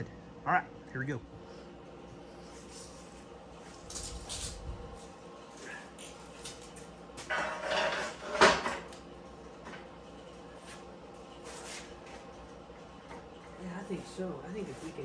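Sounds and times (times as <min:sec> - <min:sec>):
metal scraping and rattling: 0:07.2 - 0:08.8.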